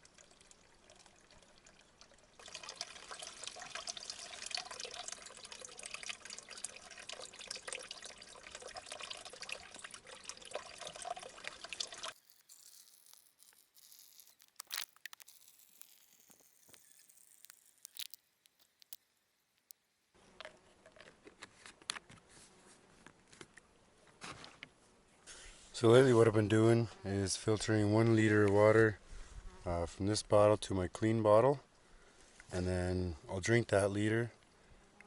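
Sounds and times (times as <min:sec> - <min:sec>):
stream trickling and splashing: 0:00.0 - 0:19.0
faint hiss: 0:25.1 - 0:30.1.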